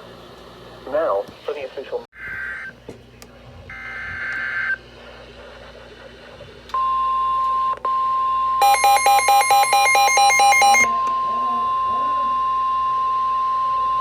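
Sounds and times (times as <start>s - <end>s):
high steady alarm tone: 3.7s - 4.8s, 6.8s - 14.0s
fast electronic beeping: 8.6s - 10.9s.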